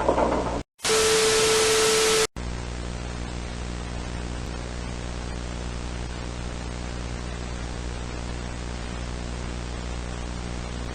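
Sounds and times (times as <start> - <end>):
broadcast static hiss: 0.8 - 10.9.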